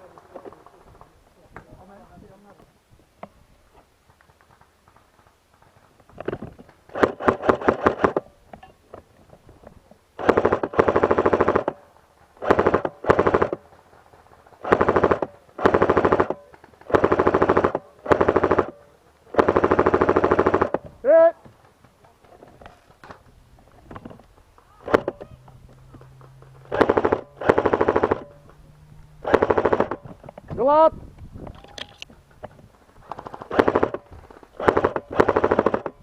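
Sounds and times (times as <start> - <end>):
airsoft gun rapid fire: 6.9 - 8.2, 10.2 - 20.8, 24.7 - 30.2, 33.0 - 36.0.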